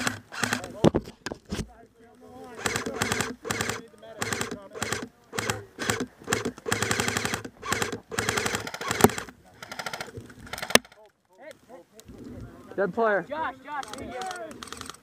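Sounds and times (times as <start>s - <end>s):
airsoft guns firing bursts: 0.0s - 0.8s, 2.4s - 11.0s.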